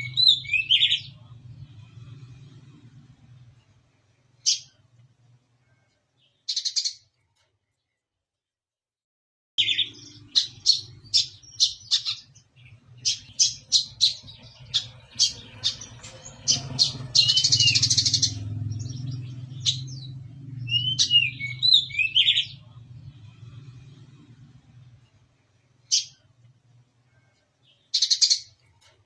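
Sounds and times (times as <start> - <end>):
steady low hum: 0.0 - 5.9, 9.8 - 27.7
bird high sharp chirps: 9.6 - 18.4
buzzy bird trill: 9.6 - 22.8.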